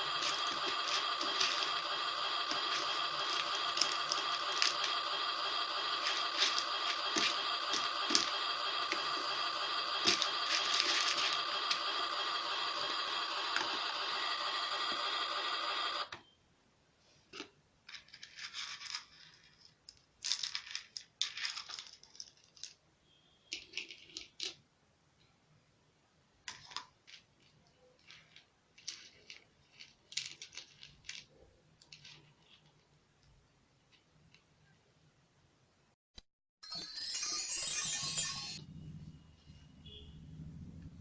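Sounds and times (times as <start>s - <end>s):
plastic toy pieces rattling: 0.0s - 5.2s, 5.8s - 9.0s, 10.0s - 11.8s, 17.8s - 22.8s, 23.6s - 24.6s, 26.5s - 32.9s
toy electronic sound effect: 0.0s - 16.2s, 36.6s - 38.7s.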